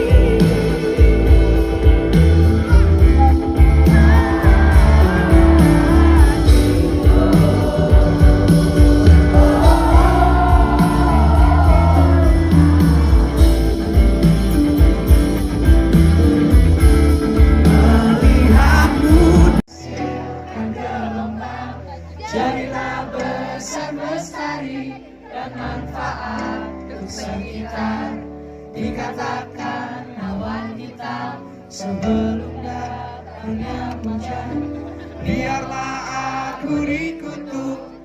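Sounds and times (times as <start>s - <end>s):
person singing: 0.0s - 15.2s, 15.9s - 28.0s
live band music: 0.0s - 21.6s.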